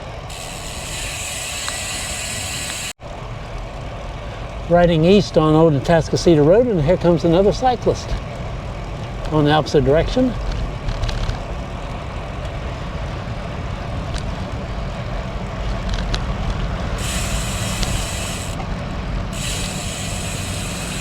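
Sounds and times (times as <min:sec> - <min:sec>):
high hiss: 0:17.0 - 0:18.6, 0:19.4 - 0:21.0.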